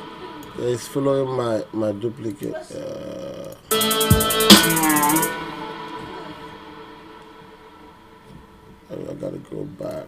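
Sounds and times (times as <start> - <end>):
trap beat: 3.7 - 7.3
pitched note sliding down: 3.7 - 8.0.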